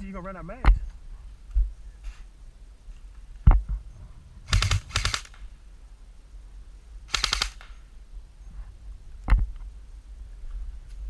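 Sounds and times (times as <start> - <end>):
airsoft gun rattling bursts: 4.5 - 5.5, 7.1 - 7.8.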